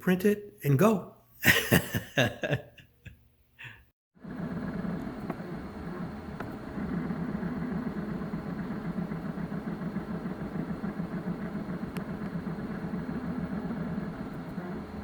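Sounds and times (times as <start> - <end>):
three-d printer motors humming: 4.2 - 15.0.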